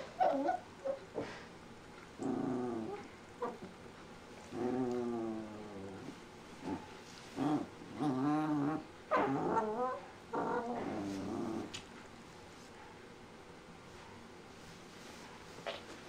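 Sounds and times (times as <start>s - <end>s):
puppy yowling: 0.2s - 1.0s.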